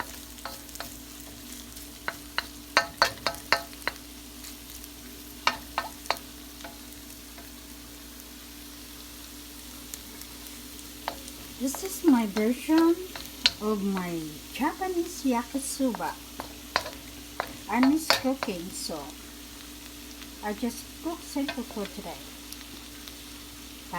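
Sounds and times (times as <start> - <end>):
utensil scraping and clicking on pan: 0.0 - 4.6, 5.4 - 7.6, 11.0 - 13.7, 15.8 - 18.6
noodles sizzling in a frying pan: 0.0 - 23.9.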